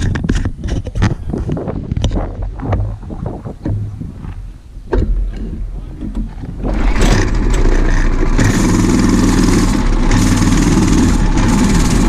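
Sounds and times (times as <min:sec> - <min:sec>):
large engine running: 0:05.1 - 0:12.0.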